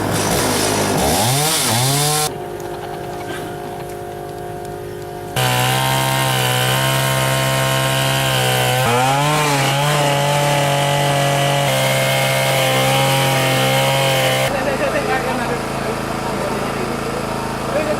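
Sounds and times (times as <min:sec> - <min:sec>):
chainsaw cutting wood: 0:00.0 - 0:02.3, 0:05.4 - 0:14.6.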